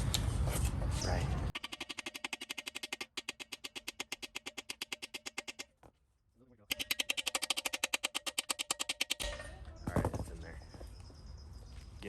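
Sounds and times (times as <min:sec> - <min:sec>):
rapid metal-on-metal hammering: 0:01.5 - 0:05.7, 0:06.7 - 0:09.4.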